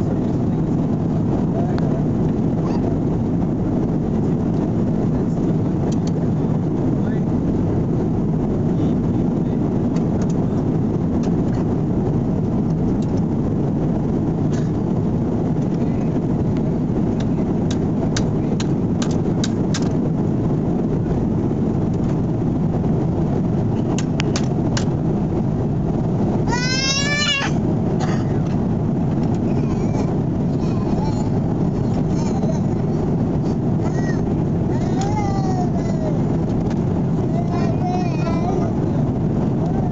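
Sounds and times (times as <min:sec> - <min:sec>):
airliner cabin rumble: 0:00.0 - 0:39.9.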